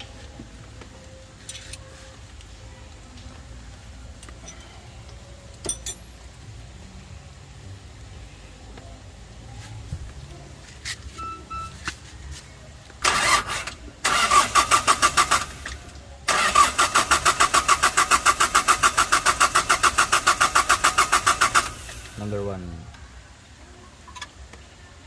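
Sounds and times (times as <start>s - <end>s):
diesel engine cranking by starter: 13.0s - 22.2s.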